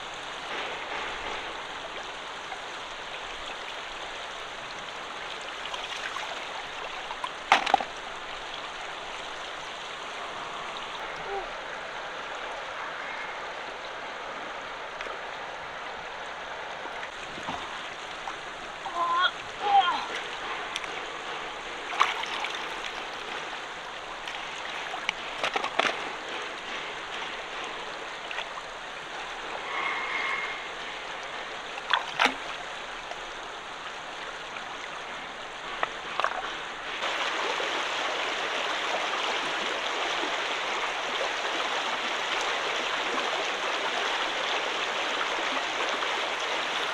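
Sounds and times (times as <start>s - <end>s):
shallow water rushing: 0.0s - 46.9s
water splashes: 0.0s - 46.9s.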